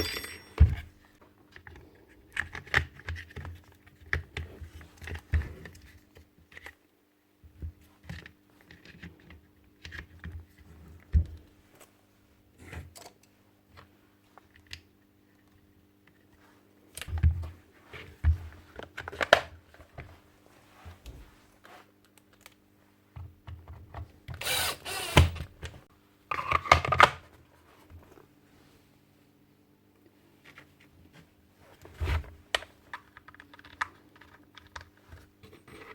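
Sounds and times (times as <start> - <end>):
hand tools clicking and rattling: 0.0 - 0.8
rough power tool bursts: 24.4 - 25.4.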